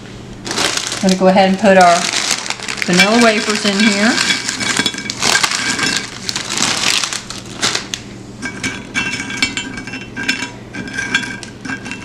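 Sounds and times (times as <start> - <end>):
packaging crinkling: 0.4 - 8.1.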